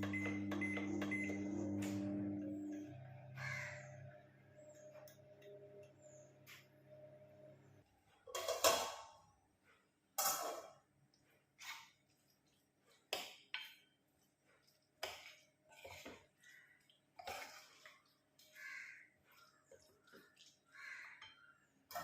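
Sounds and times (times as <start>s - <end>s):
dishes and utensils clattering: 8.3s - 9.2s, 10.2s - 10.8s.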